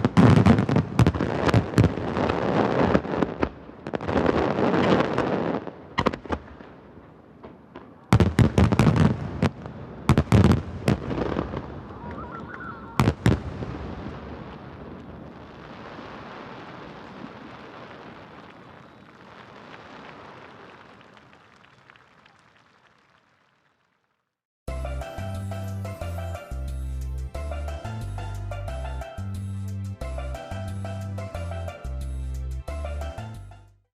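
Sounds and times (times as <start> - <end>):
fireworks booming: 0.0 - 21.5
lingering fireworks noise: 0.0 - 23.7.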